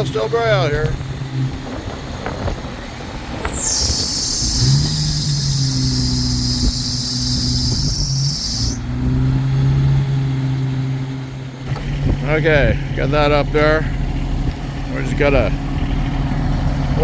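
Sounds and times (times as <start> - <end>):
wind buffeting microphone: 0.0 - 8.9, 11.6 - 17.0
electric winch whining: 0.0 - 9.0
car engine humming: 0.0 - 17.0.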